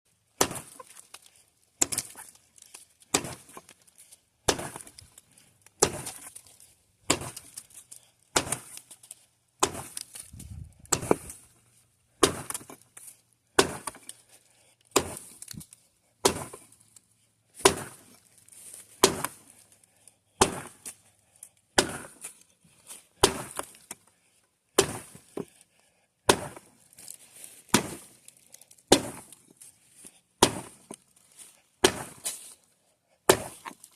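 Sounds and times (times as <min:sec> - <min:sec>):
axe chopping wood: 0:00.4 - 0:01.2, 0:01.8 - 0:02.4, 0:03.1 - 0:03.7, 0:04.4 - 0:05.1, 0:05.8 - 0:06.4, 0:07.0 - 0:07.7, 0:08.3 - 0:08.8, 0:09.6 - 0:11.4, 0:12.2 - 0:12.8, 0:13.5 - 0:14.2, 0:14.9 - 0:15.6, 0:16.2 - 0:16.7, 0:17.6 - 0:18.2, 0:19.0 - 0:19.5, 0:20.4 - 0:21.0, 0:21.7 - 0:22.3, 0:23.2 - 0:24.0, 0:24.8 - 0:25.6, 0:26.3 - 0:27.1, 0:27.7 - 0:28.2, 0:28.8 - 0:29.4, 0:30.4 - 0:31.0, 0:31.8 - 0:32.4, 0:33.2 - 0:33.9.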